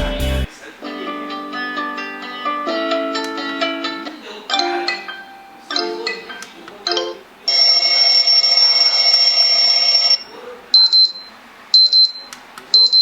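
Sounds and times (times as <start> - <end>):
chiming musical notes: 4.5 - 7.2
electronic alarm ring: 7.5 - 13.0.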